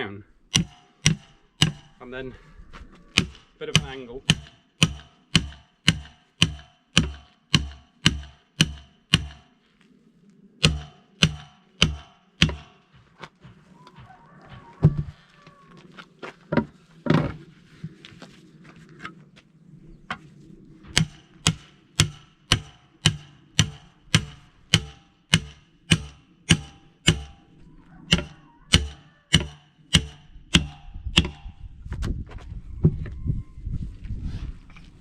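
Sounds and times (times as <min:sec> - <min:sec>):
hammer striking steel: 0:00.5 - 0:02.0, 0:03.2 - 0:09.6, 0:10.6 - 0:12.9, 0:20.9 - 0:27.5, 0:28.1 - 0:31.6.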